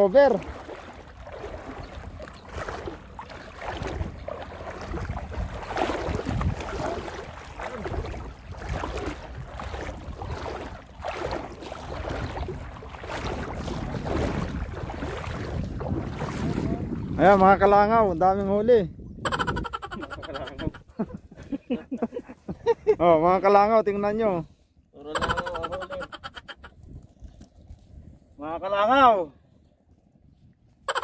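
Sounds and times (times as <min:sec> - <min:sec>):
water sloshing and splashing: 0:00.0 - 0:18.6
wind rumble on microphone: 0:00.0 - 0:21.7, 0:25.2 - 0:28.8, 0:29.6 - 0:30.9.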